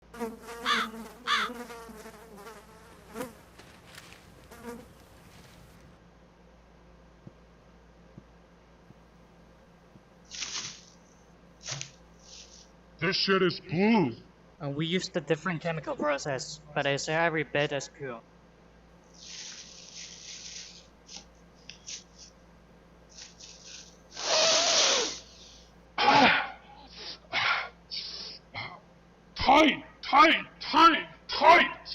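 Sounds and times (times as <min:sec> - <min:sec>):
fly buzzing: 0:00.0 - 0:06.0, 0:10.3 - 0:12.7, 0:19.1 - 0:22.4, 0:23.1 - 0:25.6
crow cawing: 0:00.6 - 0:01.7
plastic bag rustling: 0:02.8 - 0:06.0
person snorting: 0:24.2 - 0:28.8
person coughing: 0:26.0 - 0:27.8, 0:28.6 - 0:28.8.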